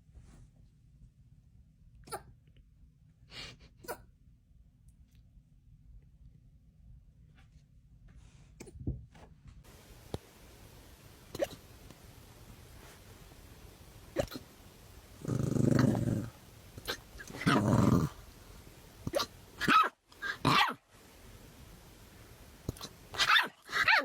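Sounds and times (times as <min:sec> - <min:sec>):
dog growling: 0:14.1 - 0:18.4
dog yipping: 0:19.1 - 0:20.8, 0:23.2 - 0:24.0.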